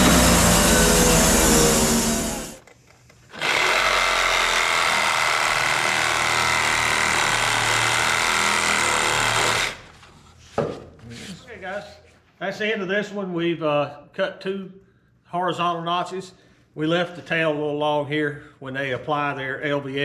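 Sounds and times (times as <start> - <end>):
motor running: 0.0 - 2.6
power saw cutting wood: 0.0 - 2.6, 3.3 - 9.9.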